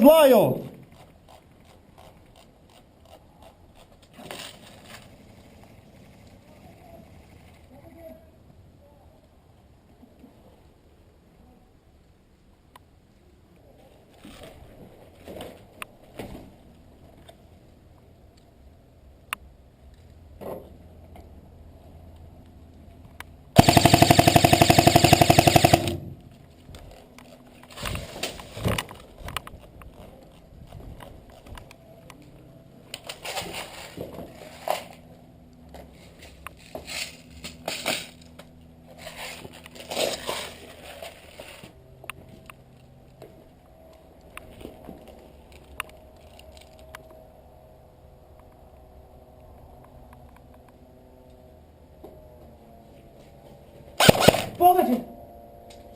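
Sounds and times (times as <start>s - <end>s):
sharp clicks: 23.6s - 26.1s, 54.0s - 54.6s.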